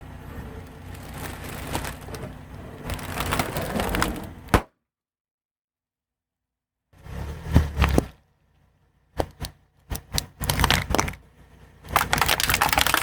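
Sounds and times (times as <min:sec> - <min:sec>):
objects crunching under tyre: 0:00.3 - 0:04.5, 0:09.2 - 0:11.2, 0:11.9 - 0:13.0.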